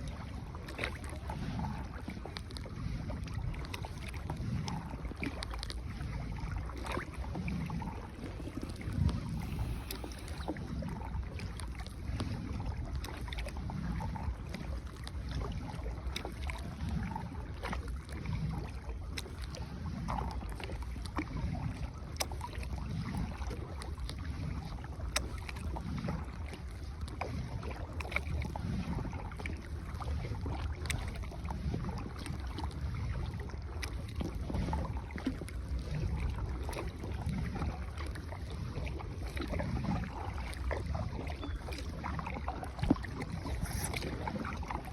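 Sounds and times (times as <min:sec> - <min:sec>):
wind noise on microphone: 0:00.0 - 0:12.8, 0:42.7 - 0:44.9
paddle strokes in water: 0:00.0 - 0:44.9.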